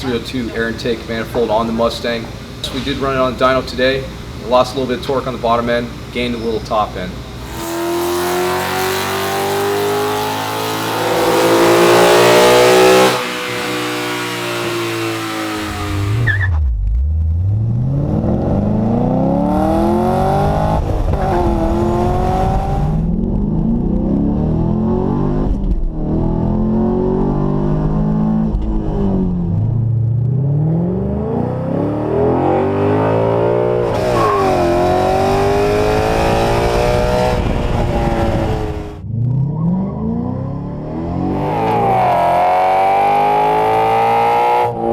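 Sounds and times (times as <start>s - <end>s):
car engine accelerating: 7.4s - 44.9s.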